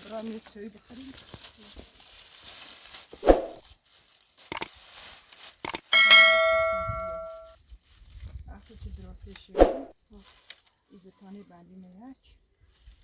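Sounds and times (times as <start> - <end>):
metal object ringing when struck: 6.0 - 7.5.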